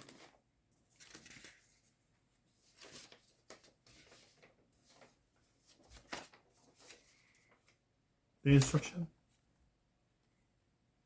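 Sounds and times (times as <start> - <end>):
paper and cardboard rustling: 0.0 - 7.8.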